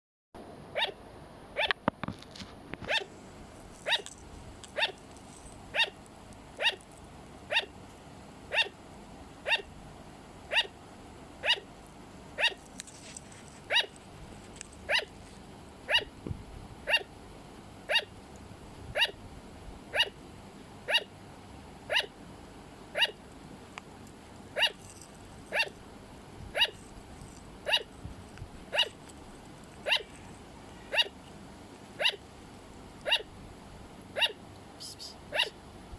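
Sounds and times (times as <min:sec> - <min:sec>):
sugar glider barking: 0:00.7 - 0:01.8, 0:02.8 - 0:07.8, 0:08.5 - 0:08.8, 0:09.4 - 0:09.8, 0:10.4 - 0:10.8, 0:11.4 - 0:12.7, 0:13.6 - 0:14.0, 0:14.8 - 0:15.2, 0:15.8 - 0:16.2, 0:16.8 - 0:17.2, 0:17.8 - 0:18.2, 0:18.9 - 0:19.3, 0:19.9 - 0:20.2, 0:20.8 - 0:21.2, 0:21.8 - 0:22.2, 0:22.9 - 0:23.3, 0:24.4 - 0:33.4, 0:34.0 - 0:35.7.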